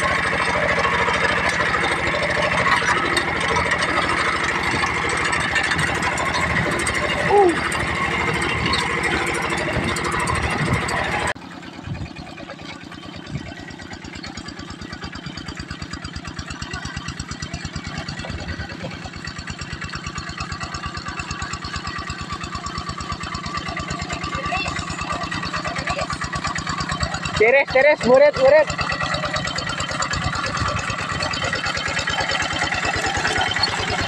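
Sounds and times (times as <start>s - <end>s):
loud rough noise: 0.0s - 34.0s
tractor engine chugging: 0.0s - 34.0s.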